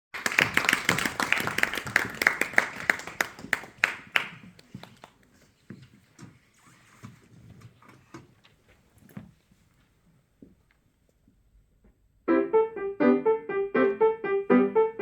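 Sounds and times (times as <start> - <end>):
audience clapping: 0.1 - 5.4.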